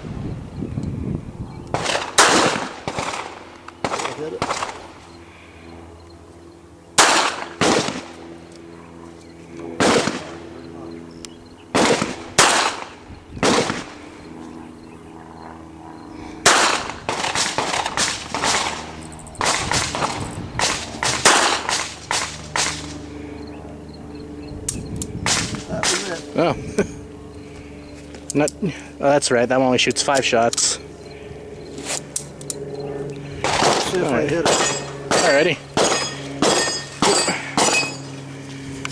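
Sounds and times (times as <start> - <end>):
pistol gunshots: 1.7 - 4.9, 7.0 - 8.2, 9.8 - 10.5, 11.7 - 14.0, 16.4 - 23.0, 33.4 - 38.0.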